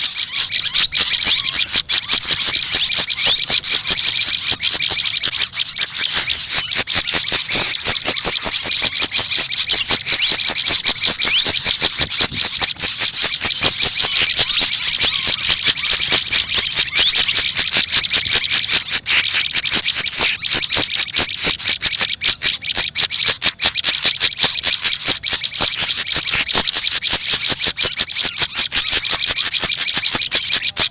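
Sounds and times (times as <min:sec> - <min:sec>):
small songbirds chirping: 0:00.0 - 0:30.9.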